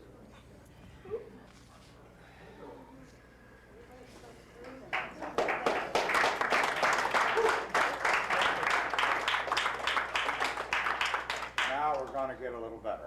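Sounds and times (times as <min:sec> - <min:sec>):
audience applauding: 0:04.9 - 0:12.2.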